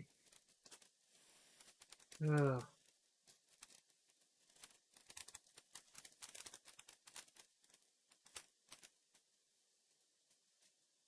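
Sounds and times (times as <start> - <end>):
plastic parts clicking and rustling: 0.1 - 1.0, 1.6 - 9.2.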